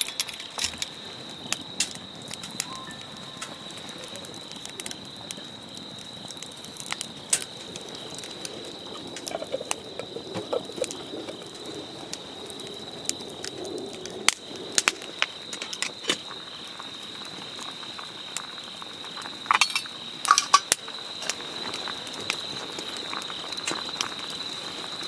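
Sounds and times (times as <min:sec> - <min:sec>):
metal and glass clinks: 0:00.0 - 0:00.9, 0:19.5 - 0:20.7
crickets trilling: 0:00.0 - 0:25.0.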